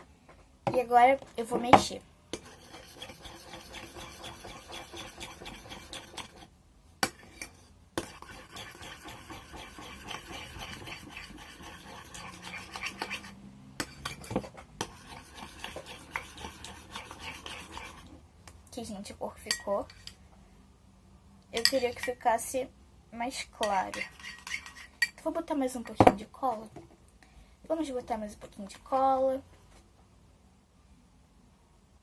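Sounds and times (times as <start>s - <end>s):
spoon scraping a bowl: 2.4s - 18.2s, 19.4s - 20.2s, 23.6s - 25.2s.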